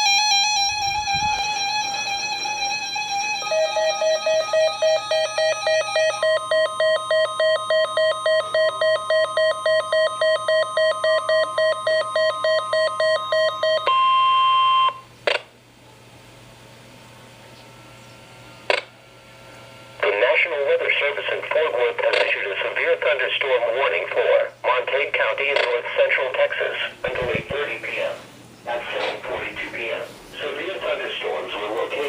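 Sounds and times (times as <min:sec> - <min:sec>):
rapid electronic beeping: 0:03.2 - 0:13.9.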